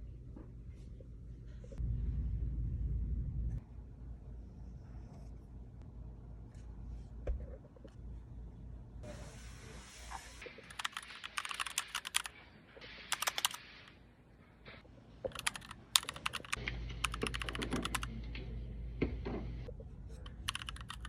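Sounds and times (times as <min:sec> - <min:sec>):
typewriter keys clacking: 0:10.7 - 0:12.3, 0:13.1 - 0:13.6, 0:15.3 - 0:18.1, 0:20.3 - 0:21.0.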